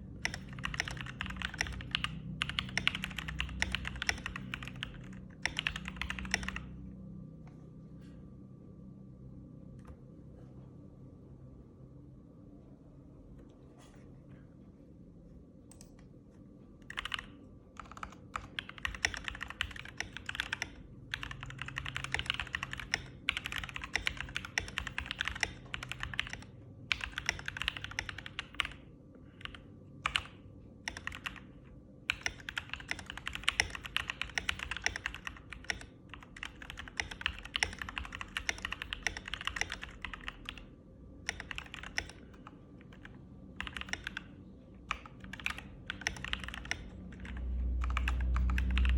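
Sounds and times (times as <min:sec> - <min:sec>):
mechanical keyboard typing: 0:00.2 - 0:06.7, 0:16.8 - 0:28.8, 0:29.4 - 0:31.5, 0:32.1 - 0:40.6, 0:41.2 - 0:48.9.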